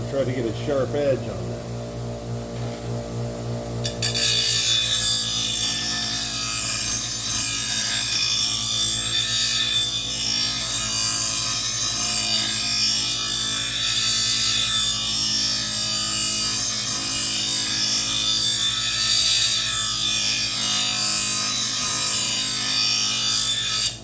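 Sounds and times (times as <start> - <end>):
grinder motor hum: 0.0 - 18.7
grinding stone hissing on blade: 3.8 - 24.0.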